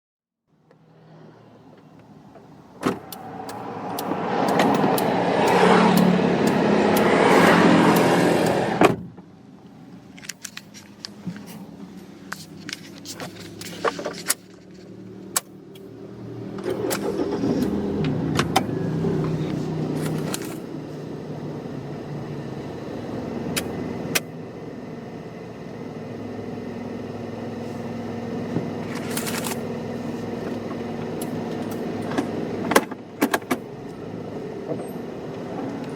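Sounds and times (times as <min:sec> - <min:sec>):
car engine and road noise: 0:00.4 - 0:35.9.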